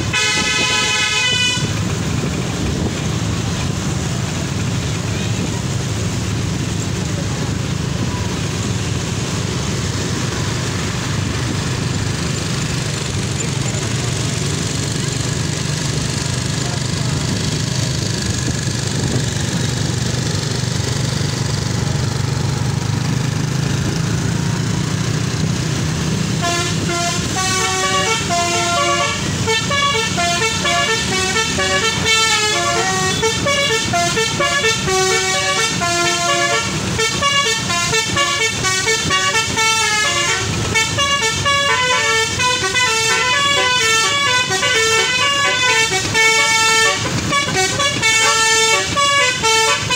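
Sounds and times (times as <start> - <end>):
bus air horn playing a tune: 0.0 - 4.4, 26.1 - 49.9
engine hum: 0.0 - 49.9.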